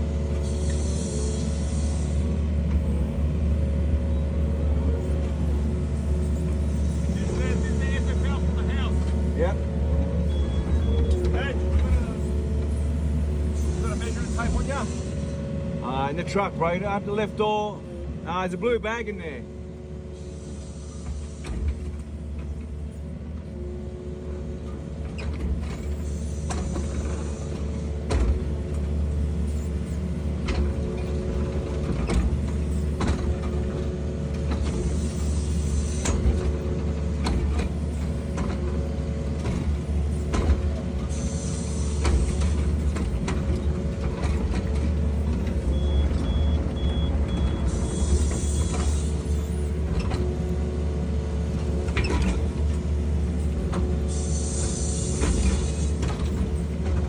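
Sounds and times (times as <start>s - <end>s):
excavator diesel engine running: 0.0s - 57.0s
high beeps: 45.7s - 47.6s.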